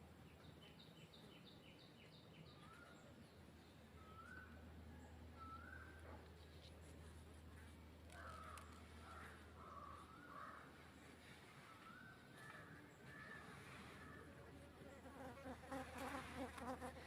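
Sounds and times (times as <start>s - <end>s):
faint wavering bird calls: 2.4s - 3.3s, 3.9s - 6.2s, 8.1s - 14.5s.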